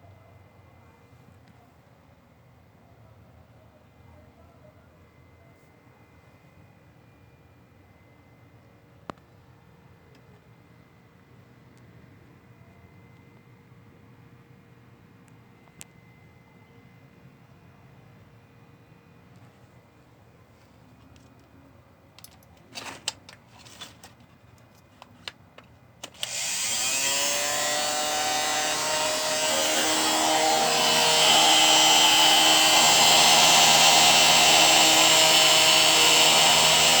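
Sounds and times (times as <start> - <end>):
blender motor whining: 26.2 - 37.0.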